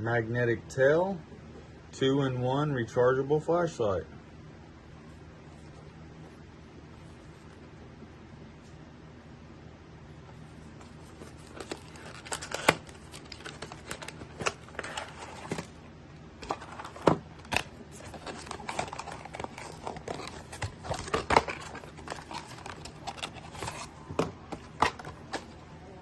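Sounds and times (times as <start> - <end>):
plastic and cardboard rustling: 10.3 - 15.8, 16.4 - 25.6.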